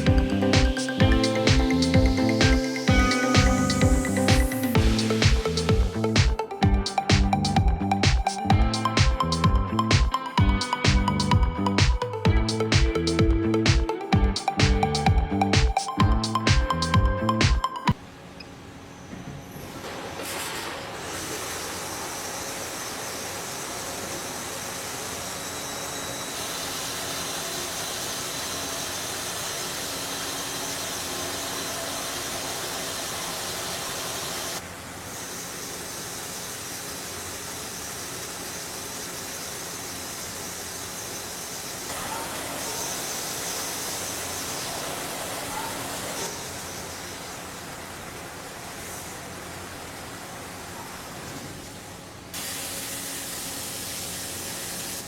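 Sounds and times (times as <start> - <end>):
high spindle whine: 0.0 - 17.4
coolant spray hiss: 52.4 - 55.0.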